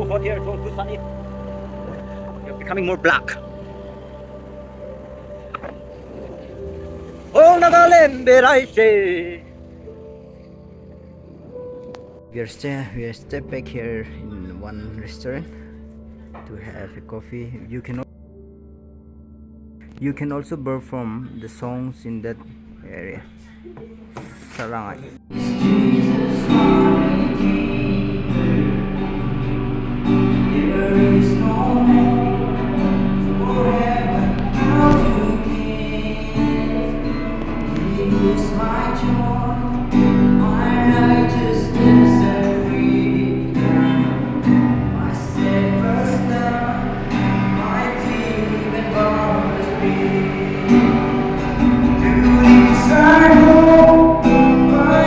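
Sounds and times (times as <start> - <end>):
song with singing: 0.0 - 9.6, 25.3 - 55.0.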